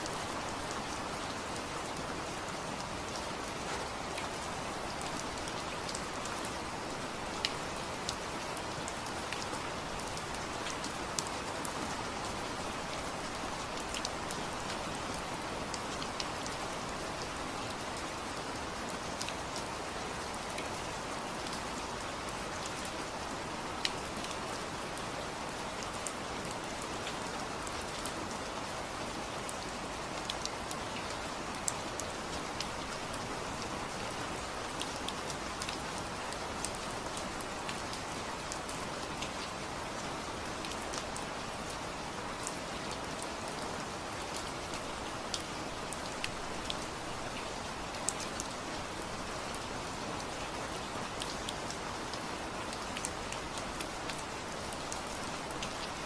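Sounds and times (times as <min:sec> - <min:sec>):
steady rainfall: 0:00.0 - 0:56.0
raindrops ticking on a surface: 0:44.2 - 0:56.0.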